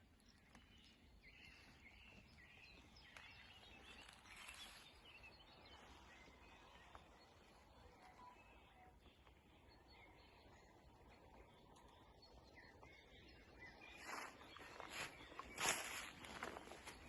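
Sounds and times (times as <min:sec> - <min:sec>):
footsteps rustling through ground cover: 0:00.0 - 0:08.6, 0:13.6 - 0:17.0
faint bird chirps: 0:00.0 - 0:17.0.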